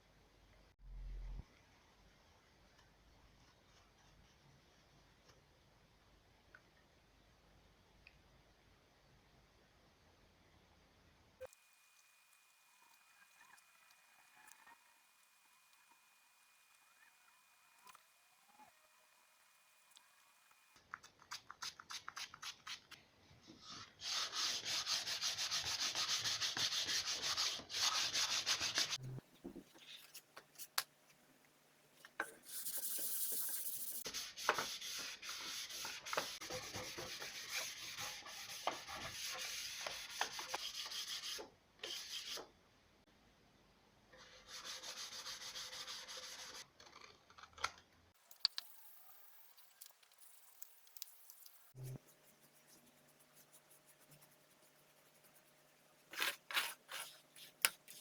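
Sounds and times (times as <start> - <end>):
sandpaper rubbing wood: 24.0 - 29.0, 32.4 - 42.4.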